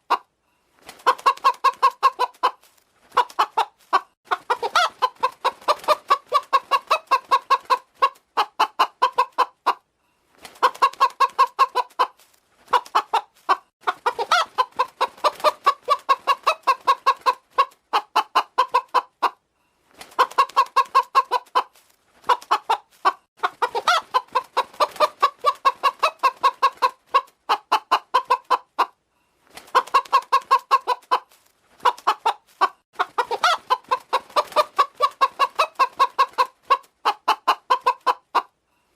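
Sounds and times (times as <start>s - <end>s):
hen clucking: 0.0s - 0.3s, 1.0s - 9.9s, 10.6s - 19.4s, 20.1s - 29.0s, 29.7s - 38.6s.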